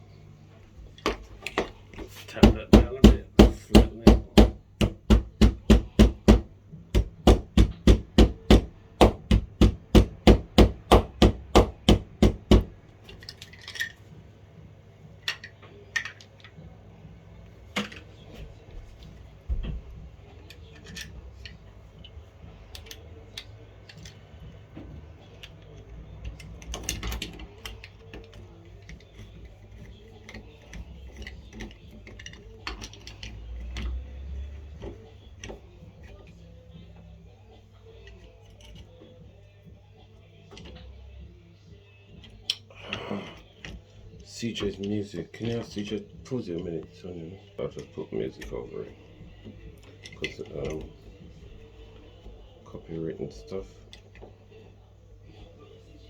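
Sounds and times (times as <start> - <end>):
hammer tapping on metal: 2.4 - 12.8
small clicks and knocks of parts: 13.0 - 14.2, 20.3 - 37.2.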